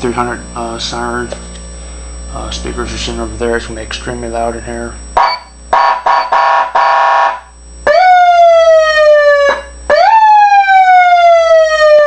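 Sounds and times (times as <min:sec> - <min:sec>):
buzzy air-horn siren blasts: 0:01.8 - 0:12.0
siren wail rising and falling: 0:05.2 - 0:12.0.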